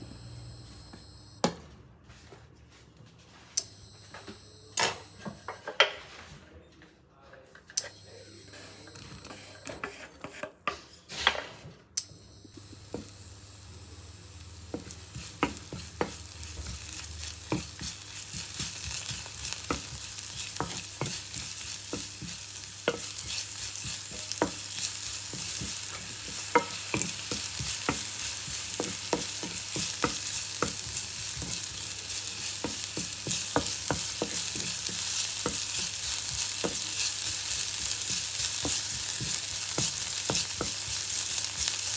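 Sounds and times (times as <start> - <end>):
spatula scraping a pan: 9.3 - 11.4, 14.7 - 41.9
hot oil sizzling: 12.6 - 41.9.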